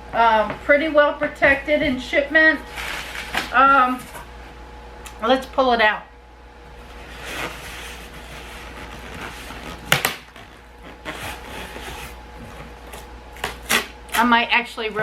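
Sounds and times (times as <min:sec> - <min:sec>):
cardboard and styrofoam scraping: 0:02.7 - 0:04.1, 0:06.9 - 0:13.9.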